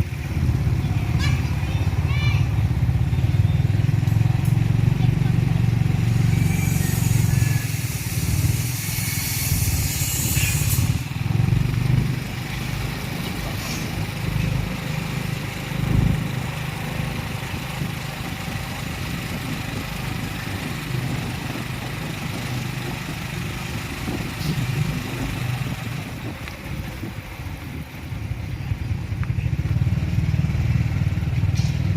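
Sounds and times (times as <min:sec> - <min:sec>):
vehicle engine running: 0:00.0 - 0:31.9
high hiss: 0:06.0 - 0:11.3.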